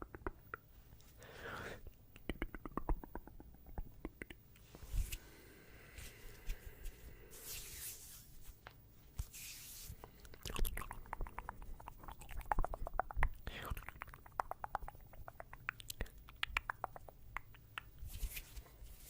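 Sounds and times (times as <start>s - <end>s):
soft scratchy swishes: 6.0s - 10.0s
small wet clicks: 10.0s - 18.0s.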